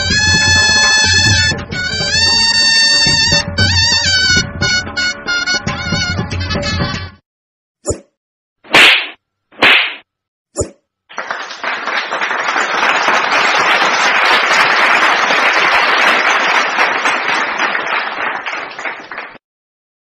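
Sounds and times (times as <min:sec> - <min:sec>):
crowd applause: 0:11.1 - 0:19.4.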